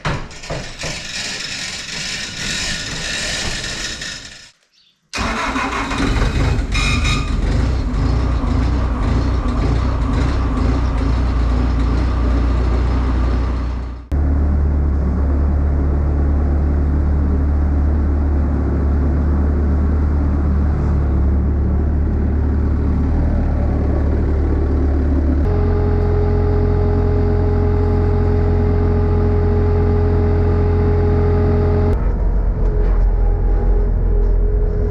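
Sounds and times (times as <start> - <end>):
vehicle engine hum: 5.2 - 34.9
steady higher tone: 25.4 - 32.0.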